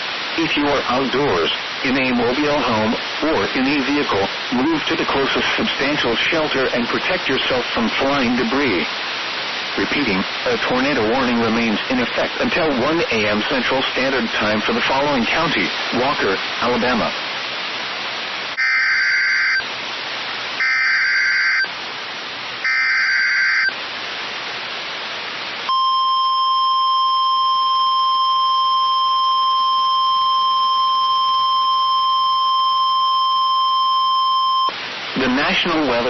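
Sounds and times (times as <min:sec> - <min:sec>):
radio hiss: 0:00.0 - 0:25.7, 0:28.7 - 0:36.0
digital data tone bursts: 0:18.6 - 0:19.6, 0:20.6 - 0:21.7, 0:22.6 - 0:23.8
steady warning alarm tone: 0:18.6 - 0:19.6, 0:20.6 - 0:21.7, 0:22.6 - 0:23.8, 0:25.7 - 0:34.7.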